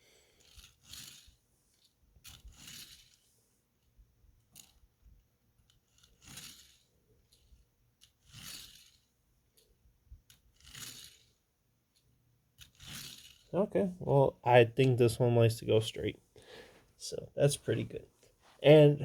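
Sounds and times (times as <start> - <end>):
toy car wheels swishing: 0.3 - 13.6.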